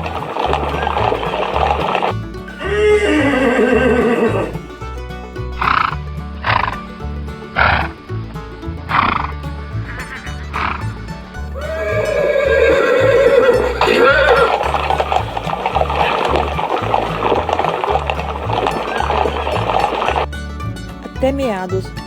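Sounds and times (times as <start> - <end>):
background music with bass line: 0.0 - 22.0
horse neighing: 0.1 - 4.7, 9.0 - 20.3
horse blowing breath: 8.9 - 20.3.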